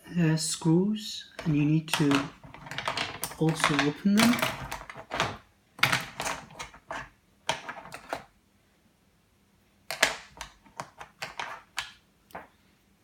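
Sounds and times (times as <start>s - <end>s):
small tools clicking and tapping: 1.4s - 8.2s, 9.9s - 12.5s.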